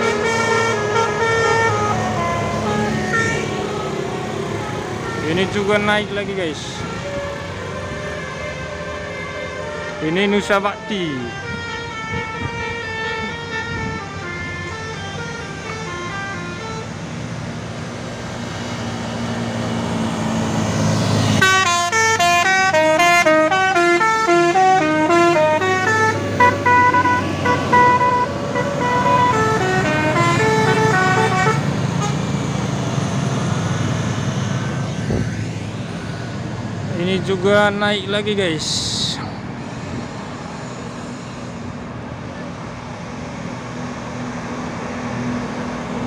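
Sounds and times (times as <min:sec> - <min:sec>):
musical air horn melodies: 0:00.0 - 0:05.8, 0:21.4 - 0:32.2
bus engine running: 0:00.0 - 0:46.0.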